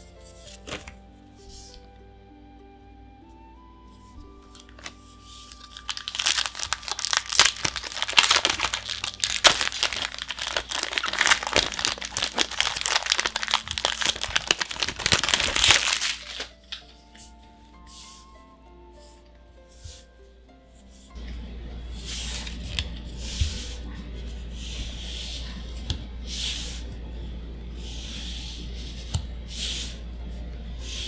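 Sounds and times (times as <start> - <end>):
foil wrapper crinkling and tearing: 4.5 - 16.8.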